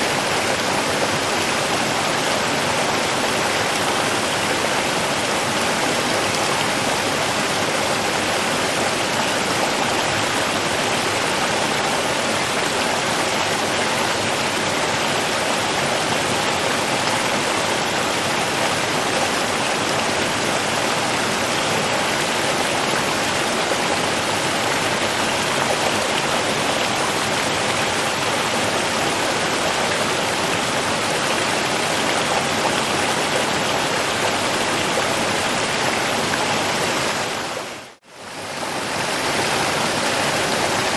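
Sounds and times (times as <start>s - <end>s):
water rushing: 0.0s - 40.9s.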